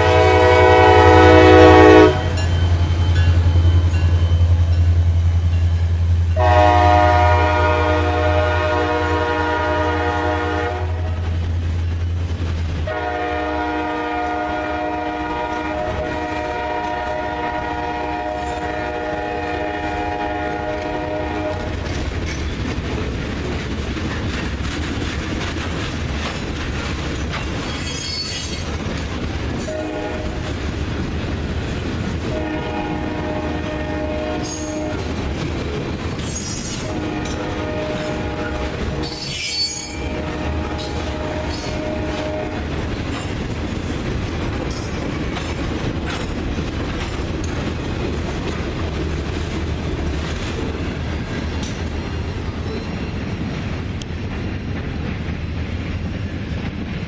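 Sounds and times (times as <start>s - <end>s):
locomotive horn blasts: 0.0s - 2.5s, 6.4s - 11.3s, 12.9s - 21.8s, 29.7s - 30.5s, 32.3s - 35.1s, 36.8s - 42.8s
wheels squealing on rails: 0.0s - 7.7s, 18.2s - 18.8s, 25.0s - 30.6s, 32.3s - 43.9s, 50.6s - 53.5s.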